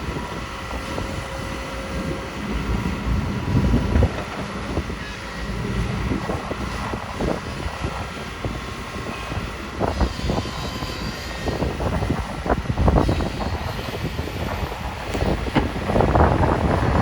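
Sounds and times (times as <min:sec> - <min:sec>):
excavator diesel engine running: 0:00.1 - 0:17.0
knocks and clatter: 0:15.1 - 0:16.3.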